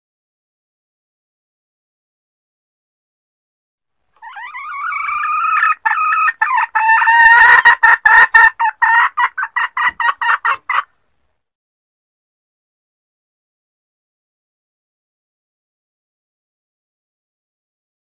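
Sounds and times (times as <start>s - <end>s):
hen calling: 4.2s - 10.8s.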